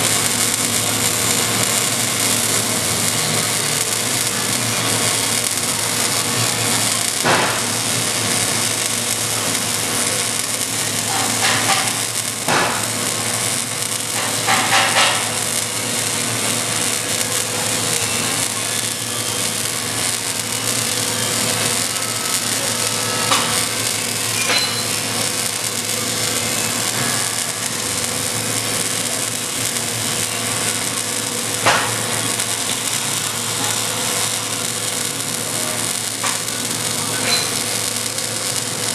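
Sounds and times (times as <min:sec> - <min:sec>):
sharp welding pops: 0:00.0 - 0:38.9
welding arc crackling hiss: 0:00.0 - 0:38.9.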